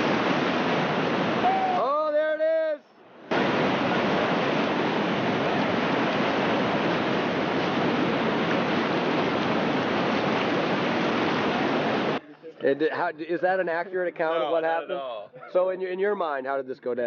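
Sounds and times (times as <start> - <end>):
river whitewater rushing: 0.0 - 1.9, 3.2 - 12.2.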